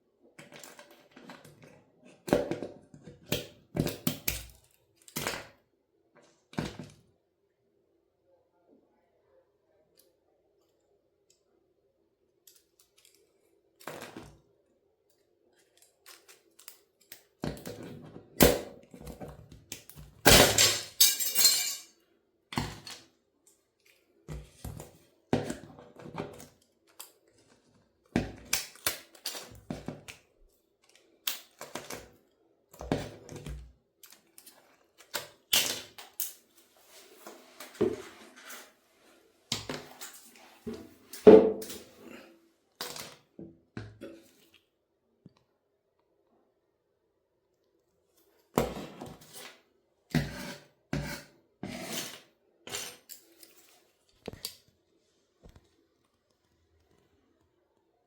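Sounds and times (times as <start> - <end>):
toy car cracking and snapping: 28.4 - 30.2.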